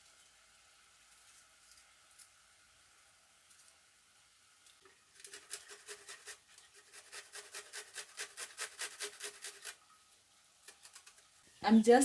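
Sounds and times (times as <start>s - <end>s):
utensil scraping in a pan: 4.7s - 11.5s.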